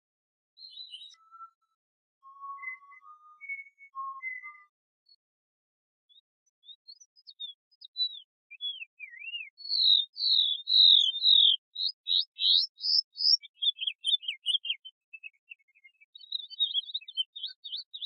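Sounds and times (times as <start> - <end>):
canary singing: 6.7 - 18.0.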